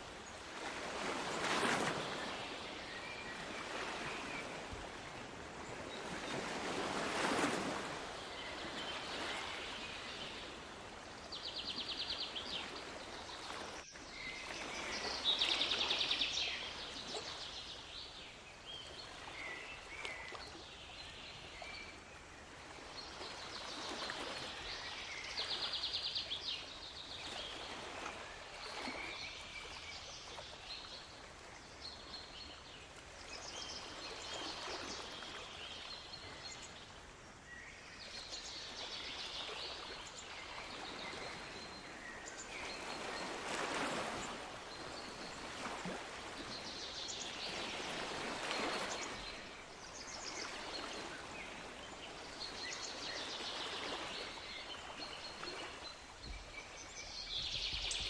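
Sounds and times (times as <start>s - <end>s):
waves washing in: 0.0s - 18.3s, 38.5s - 57.1s.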